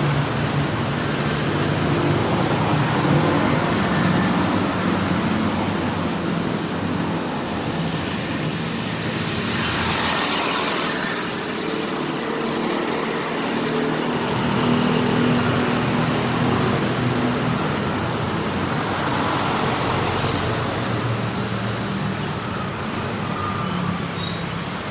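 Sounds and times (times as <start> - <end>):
motorcycle and car engines passing: 9.2 - 22.2.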